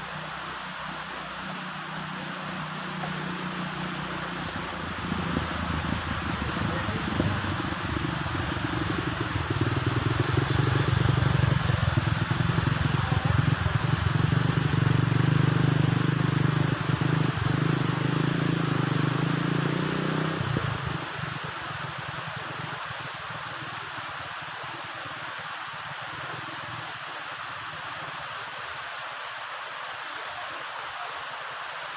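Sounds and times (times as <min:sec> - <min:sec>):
heavy rain: 0:00.0 - 0:31.9
thunder rumbling: 0:04.7 - 0:16.2.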